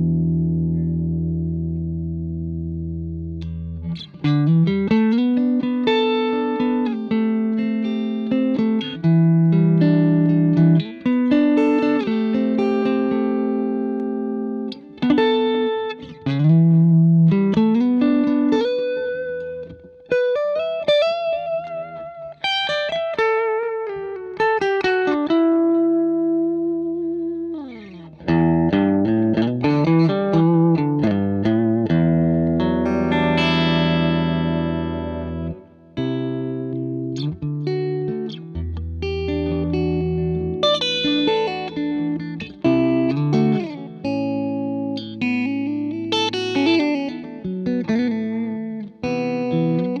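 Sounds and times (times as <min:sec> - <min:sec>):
electric guitar playing: 0:00.0 - 0:50.0.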